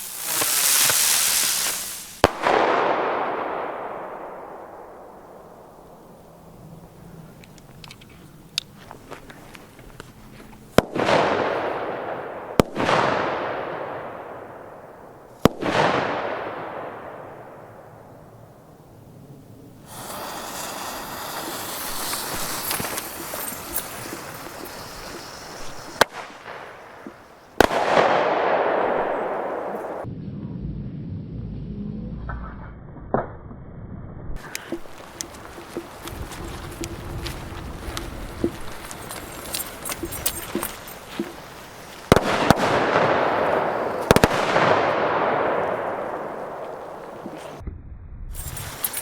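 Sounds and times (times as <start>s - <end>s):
firework hiss: 0.0s - 3.6s, 19.8s - 30.1s, 34.4s - 47.6s, 48.4s - 49.0s
fireworks bangs: 0.0s - 6.0s, 10.8s - 18.2s, 19.8s - 30.1s, 34.4s - 47.6s
fireworks crackling: 0.0s - 6.0s, 8.9s - 18.1s, 19.8s - 30.1s, 34.4s - 47.6s, 48.4s - 49.0s.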